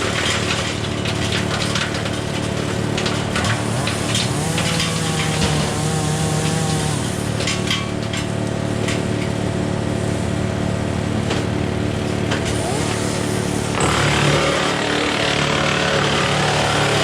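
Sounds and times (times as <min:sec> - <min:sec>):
tractor diesel engine running: 0:00.0 - 0:17.0.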